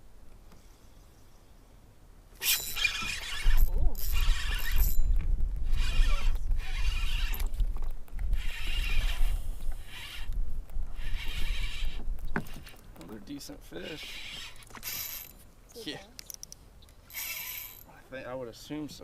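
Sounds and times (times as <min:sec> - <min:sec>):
fishing reel whirring: 0:02.4 - 0:07.6, 0:08.3 - 0:12.8, 0:13.8 - 0:15.4, 0:17.0 - 0:17.9.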